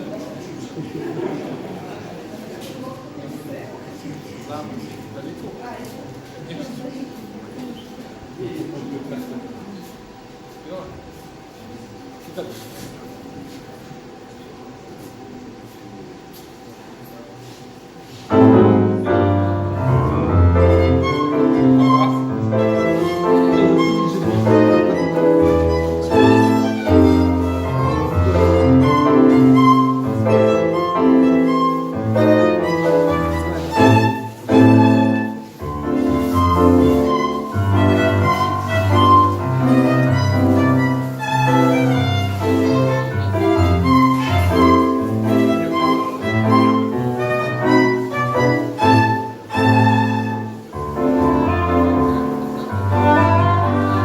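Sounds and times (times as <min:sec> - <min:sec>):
live tango band music: 0:17.4 - 0:54.0.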